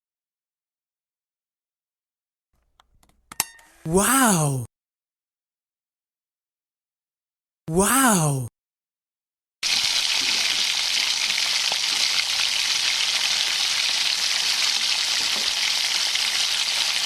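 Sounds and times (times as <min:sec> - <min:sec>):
sizzling hiss: 0:09.6 - 0:17.0.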